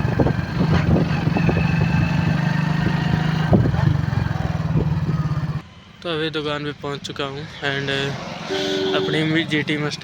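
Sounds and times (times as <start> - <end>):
motorcycle engine running: 0.0 - 5.6.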